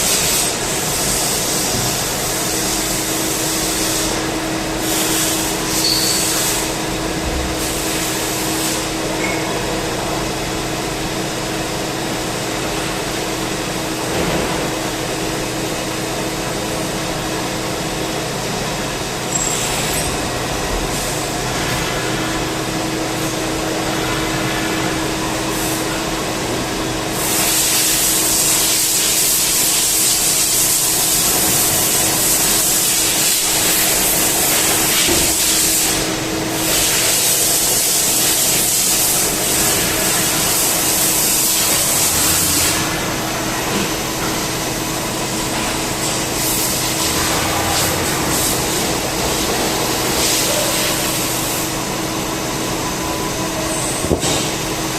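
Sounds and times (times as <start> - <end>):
lathe machine humming: 39.0 - 54.9.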